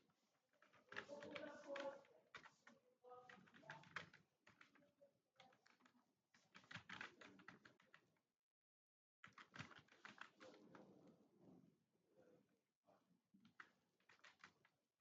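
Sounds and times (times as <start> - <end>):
typing on computer keyboard: 0.6 - 4.8, 5.4 - 8.0, 9.2 - 10.8, 13.4 - 14.7.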